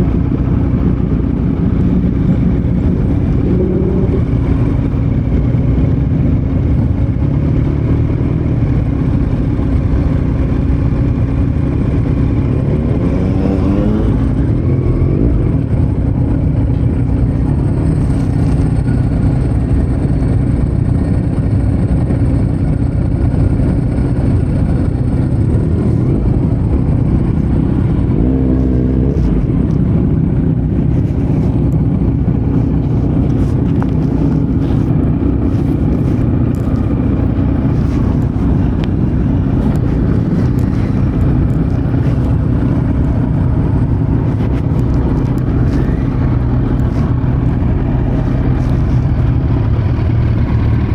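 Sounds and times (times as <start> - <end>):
motorcycle engine running: 0.0 - 50.9.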